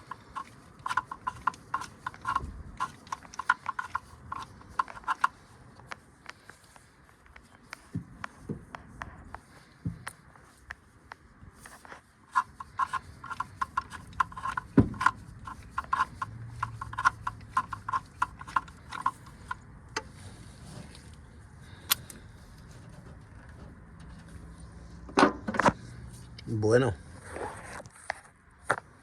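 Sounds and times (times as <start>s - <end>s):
socket ratchet clicking: 12.4s - 19.6s.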